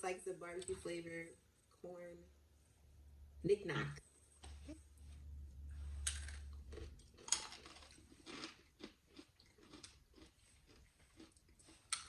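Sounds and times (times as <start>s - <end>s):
low hum: 0.8s - 7.1s
crunchy peanuts being chewed: 5.9s - 12.0s.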